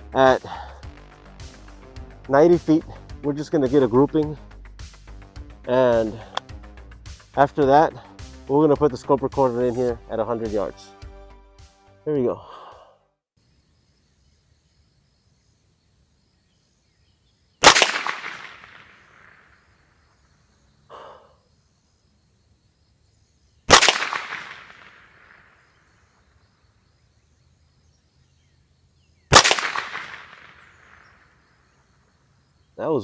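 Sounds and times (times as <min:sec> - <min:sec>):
rifle shots with echo: 0:17.6 - 0:19.6, 0:23.7 - 0:25.6, 0:29.3 - 0:31.3.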